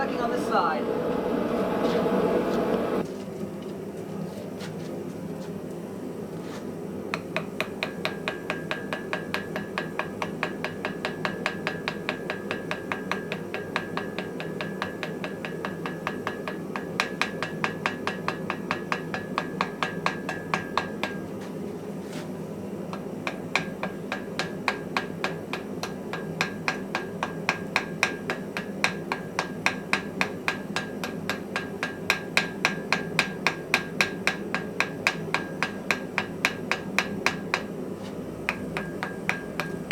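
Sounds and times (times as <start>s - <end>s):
low rushing noise: 0.0s - 3.0s
hammer ringing on anvil: 7.8s - 21.3s, 23.3s - 37.7s, 38.5s - 39.9s.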